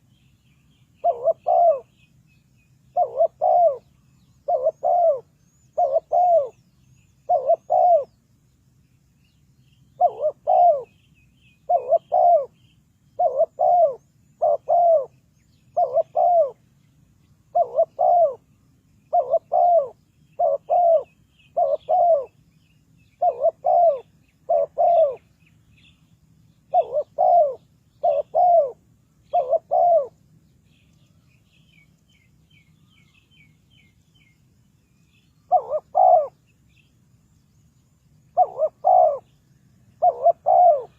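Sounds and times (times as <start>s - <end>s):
small birds chirping: 0.0s - 40.9s
dove cooing: 0.9s - 2.0s, 2.9s - 6.6s, 7.2s - 8.2s, 9.9s - 12.6s, 13.2s - 16.7s, 17.5s - 18.5s, 19.1s - 22.4s, 23.1s - 25.3s, 26.6s - 30.2s, 35.4s - 36.4s, 38.3s - 40.9s.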